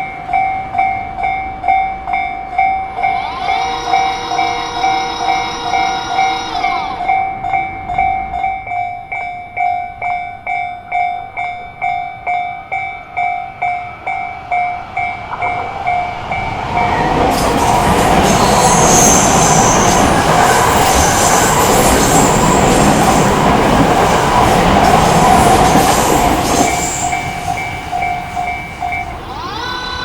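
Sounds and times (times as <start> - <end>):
approaching train rumble: 0.0 - 30.0
train horn: 3.0 - 7.2.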